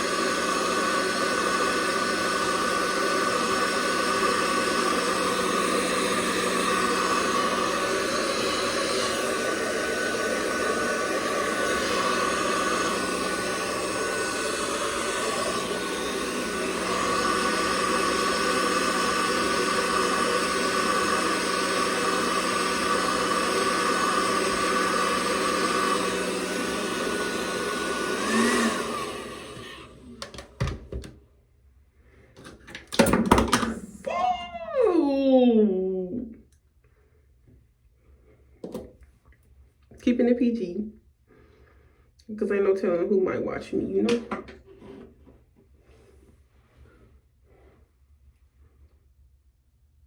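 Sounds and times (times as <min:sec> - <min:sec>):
hair dryer running: 0:00.0 - 0:31.1, 0:33.0 - 0:34.9.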